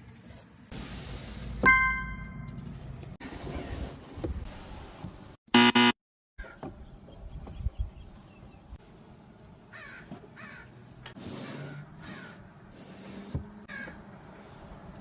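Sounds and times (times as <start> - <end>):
crow cawing: 9.7 - 10.7.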